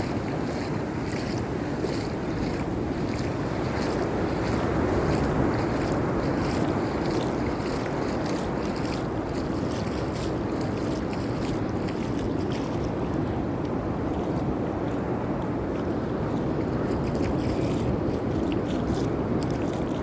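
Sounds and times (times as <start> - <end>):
wind rumbling on microphone: 0.0 - 20.0.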